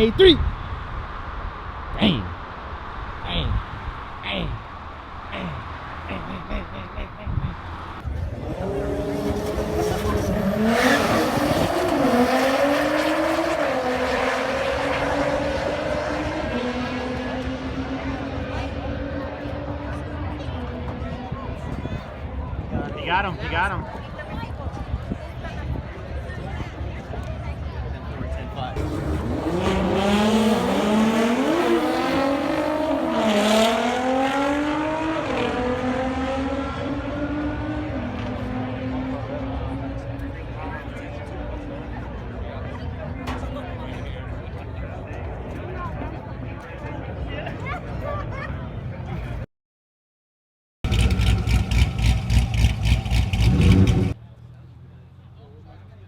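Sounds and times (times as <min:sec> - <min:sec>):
car engine revving hard: 0:07.8 - 0:20.2, 0:28.8 - 0:40.3, 0:50.9 - 0:54.2.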